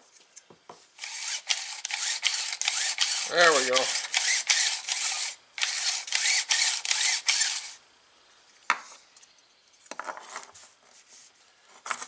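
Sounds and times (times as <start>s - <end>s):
starter rope pulled and rewinding: 1.0s - 7.8s.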